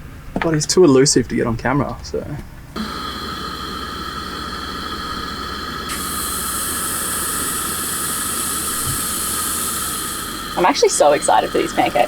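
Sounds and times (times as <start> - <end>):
faint whine: 2.8 - 12.0
pancakes sizzling in a pan: 2.8 - 12.0.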